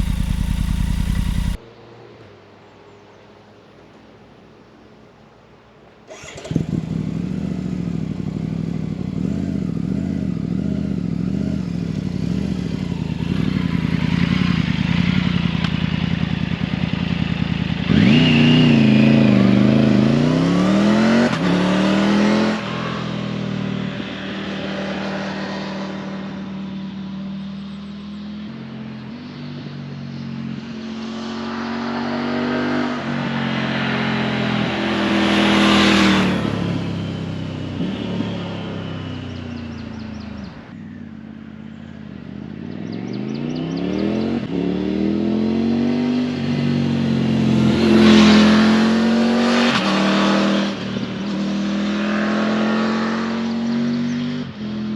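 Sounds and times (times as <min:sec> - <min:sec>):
motorcycle engine revving: 0:00.0 - 0:01.6, 0:06.1 - 0:23.4, 0:33.2 - 0:40.8, 0:42.1 - 0:54.3.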